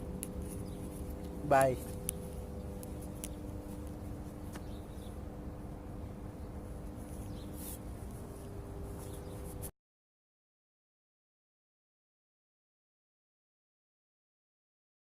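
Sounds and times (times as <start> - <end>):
low steady hum: 0.0 - 9.7.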